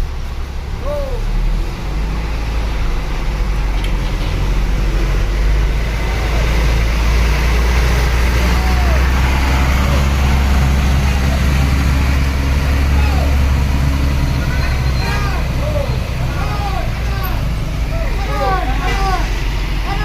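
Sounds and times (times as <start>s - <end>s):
large bus engine rumbling: 0.0s - 20.0s.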